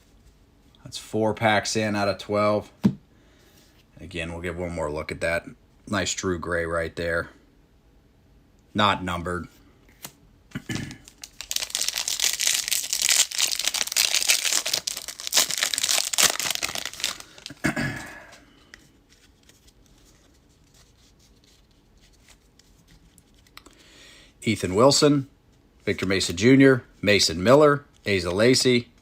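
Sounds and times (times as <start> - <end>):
foil wrapper crackling: 11.1 - 17.6
foil wrapper tearing and crinkling: 11.1 - 17.6.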